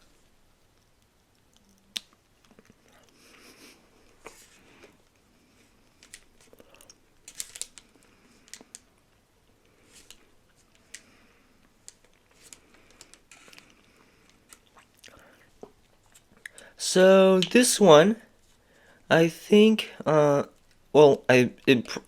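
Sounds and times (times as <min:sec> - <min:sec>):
chewing a snack: 0:00.7 - 0:03.4, 0:10.1 - 0:16.6
snack packet crinkling: 0:06.0 - 0:08.9, 0:11.7 - 0:16.6.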